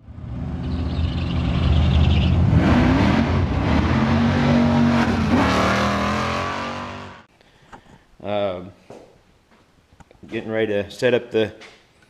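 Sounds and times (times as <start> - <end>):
car engine revving: 0.0 - 7.3.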